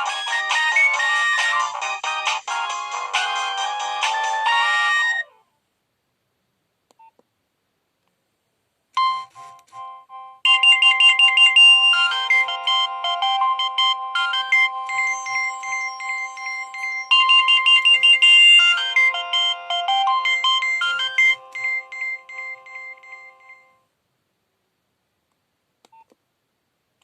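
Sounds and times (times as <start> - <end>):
mobile phone ringtone: 0.0 - 5.4, 9.0 - 23.8.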